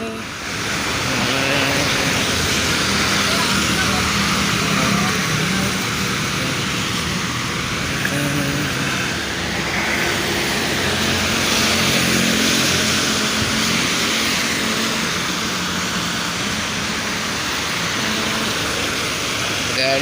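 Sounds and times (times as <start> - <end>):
road noise: 0.0 - 20.0
vehicle engine hum: 0.0 - 20.0.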